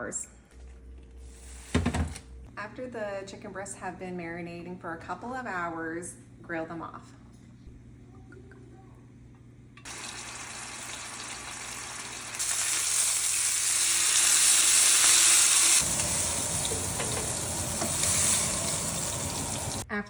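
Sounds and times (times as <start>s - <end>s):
chicken sizzling on a hot grill: 9.9s - 19.8s.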